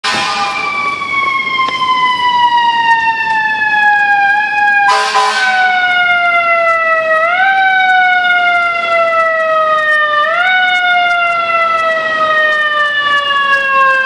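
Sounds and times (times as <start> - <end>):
air horn blast: 0.0 - 0.7, 4.9 - 5.8
fire engine siren wailing: 0.0 - 14.0.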